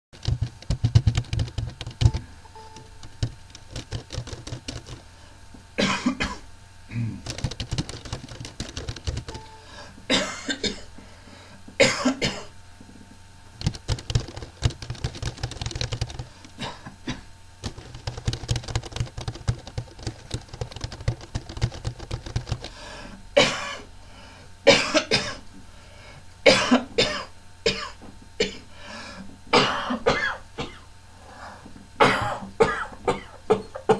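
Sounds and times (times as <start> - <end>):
person coughing: 5.8 - 7.2, 10.1 - 10.9, 11.8 - 12.5, 16.6 - 17.2, 23.4 - 23.8, 24.7 - 25.4, 26.5 - 28.7, 29.6 - 30.9, 32.0 - 33.9.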